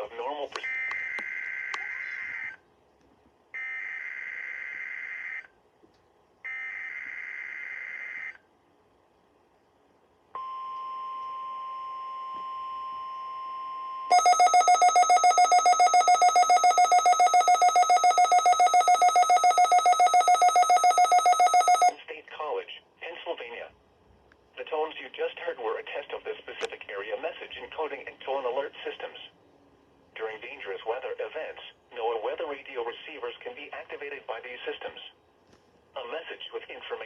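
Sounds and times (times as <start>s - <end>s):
loud pulsing alarm beep: 10.4s - 21.9s.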